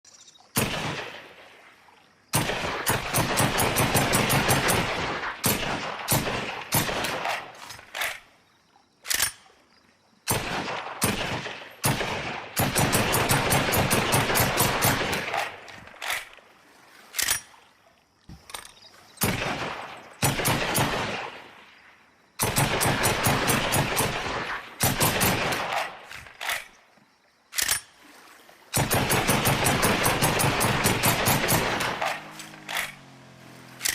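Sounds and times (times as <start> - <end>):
rifle gunfire with echo: 0.6 - 1.4, 2.3 - 7.6, 10.3 - 15.6, 19.2 - 21.6, 22.4 - 26.1, 28.8 - 32.8.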